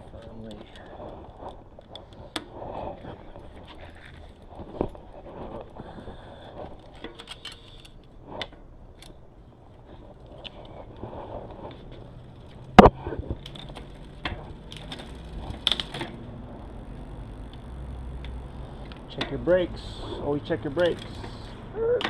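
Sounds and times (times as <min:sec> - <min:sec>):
metallic clicks of bicycle axle: 0:05.6 - 0:09.2, 0:10.3 - 0:21.6.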